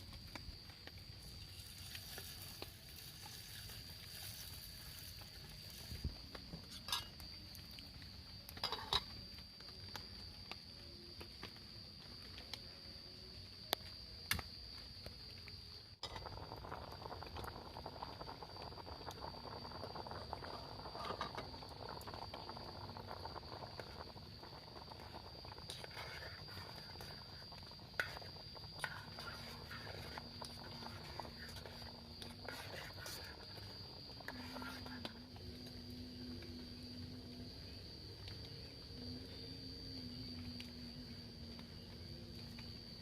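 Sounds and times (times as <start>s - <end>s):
high-pitched insect drone: 16.0s - 43.0s.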